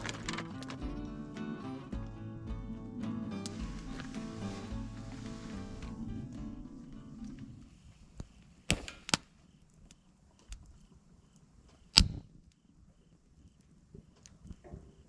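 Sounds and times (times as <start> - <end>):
firewood breaking with cracks: 0.0 - 1.4
background music: 0.0 - 7.6.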